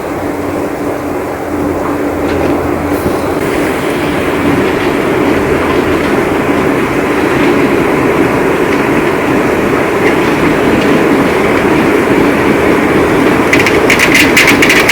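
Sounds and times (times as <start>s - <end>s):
heavy rain pouring: 1.6s - 14.9s.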